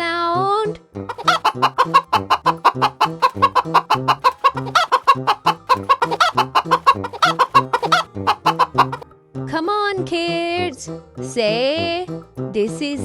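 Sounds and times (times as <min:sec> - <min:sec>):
background music: 0:00.8 - 0:13.0
chicken clucking: 0:01.1 - 0:09.0.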